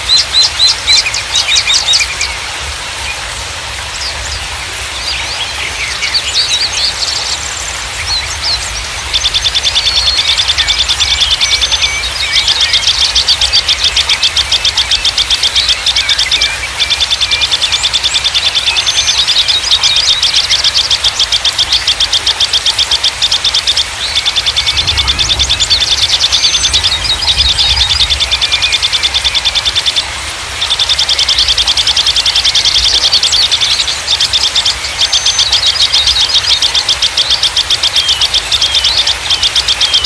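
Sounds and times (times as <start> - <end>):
fast pulsed bird trills: 0.0 - 2.4, 4.0 - 40.0
songbirds chirping: 0.0 - 40.0
low steady rumble: 23.9 - 30.6.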